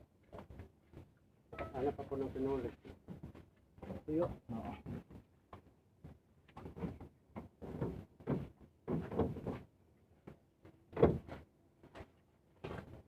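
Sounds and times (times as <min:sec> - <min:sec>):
objects knocking and scraping: 0:06.0 - 0:09.7.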